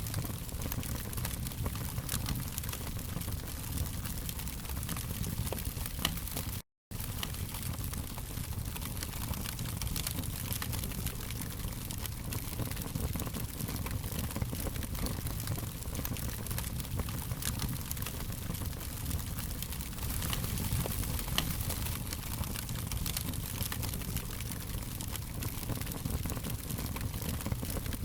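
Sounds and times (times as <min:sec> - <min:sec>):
fire crackling and popping: 0:00.0 - 0:28.0.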